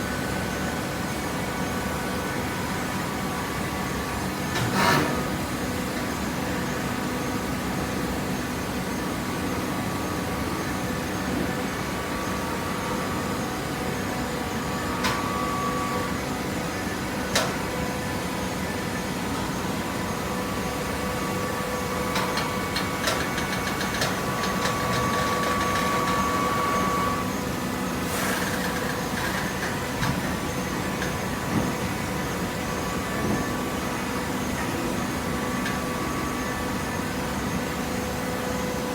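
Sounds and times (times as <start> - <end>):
baling press machine hum: 10.4 - 38.9.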